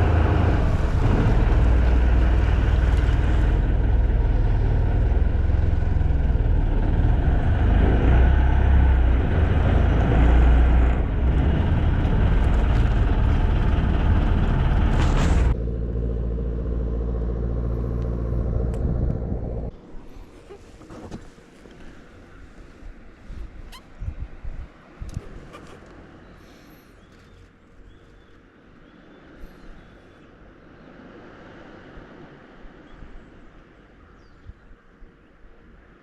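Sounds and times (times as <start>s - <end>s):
boat engine running: 0.0s - 23.8s.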